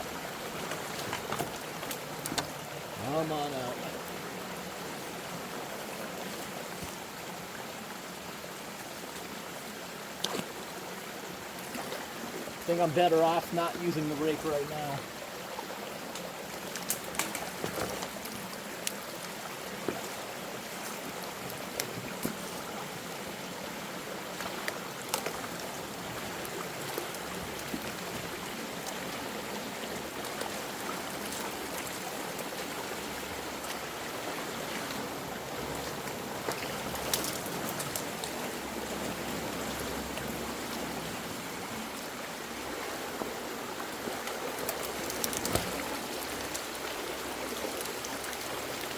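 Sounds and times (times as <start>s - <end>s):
water rushing through culvert: 0.0s - 48.9s.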